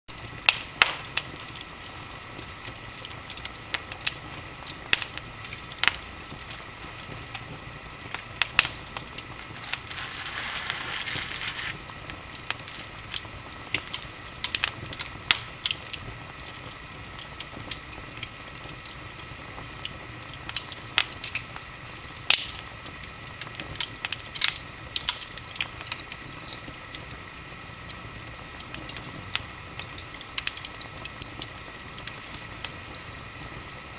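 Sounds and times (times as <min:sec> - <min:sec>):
wood fire crackling and popping: 0:00.1 - 0:33.9
steady fire hiss: 0:00.2 - 0:33.9
loud hissing rush: 0:09.3 - 0:11.8.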